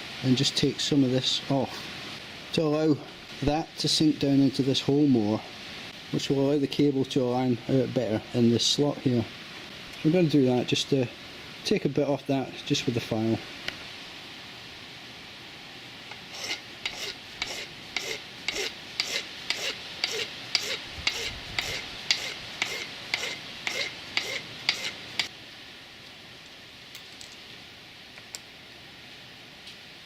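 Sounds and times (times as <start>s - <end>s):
hand file rasping on metal: 16.1s - 25.3s.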